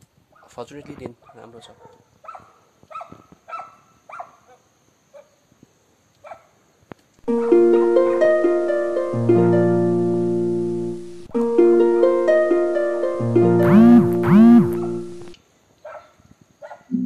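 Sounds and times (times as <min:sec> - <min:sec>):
dog barking: 0:01.2 - 0:05.4, 0:06.2 - 0:06.6, 0:15.8 - 0:16.9
plucked harp-like music: 0:07.3 - 0:15.3.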